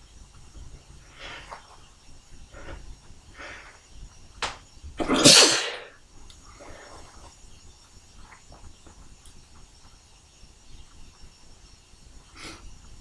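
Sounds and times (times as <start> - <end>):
quick breaths: 1.0 - 1.7, 2.4 - 3.9
person sneezing: 5.0 - 5.9.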